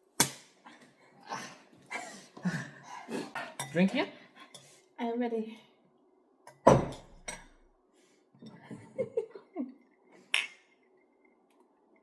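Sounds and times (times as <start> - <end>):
tableware knocking on table: 6.6 - 7.5.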